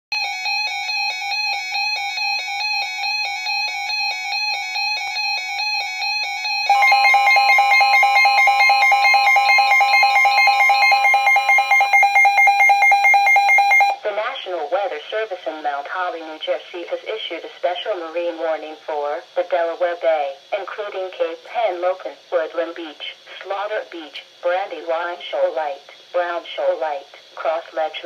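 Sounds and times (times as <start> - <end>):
loud alarm: 0.2 - 14.0
pulsing electronic alarm beeps: 0.2 - 14.0.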